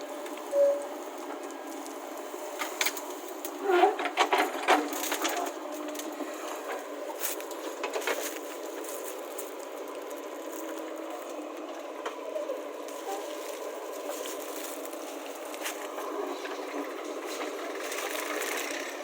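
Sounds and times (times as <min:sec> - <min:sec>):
backhoe diesel engine running: 0:00.0 - 0:19.0.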